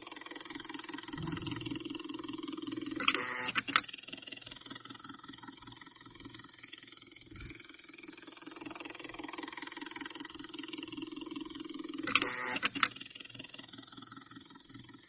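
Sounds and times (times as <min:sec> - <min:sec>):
pulsing pump motor hum: 0:00.0 - 0:15.0
sharp clicks: 0:03.0 - 0:03.8, 0:12.1 - 0:12.9.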